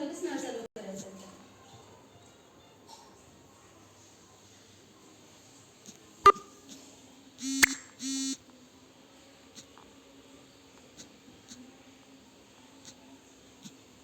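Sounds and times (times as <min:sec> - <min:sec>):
short electronic beeps: 0:06.3 - 0:06.5, 0:07.4 - 0:08.4.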